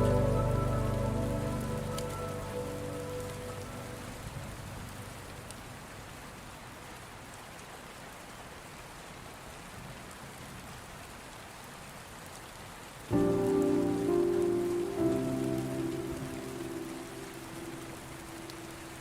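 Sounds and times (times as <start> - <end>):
music with held chord: 0.0 - 5.1, 13.1 - 19.0
steady rain falling: 0.0 - 19.0.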